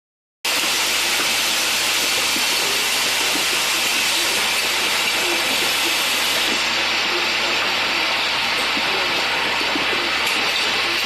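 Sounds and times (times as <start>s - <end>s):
packaging machine hissing: 0.5s - 8.2s.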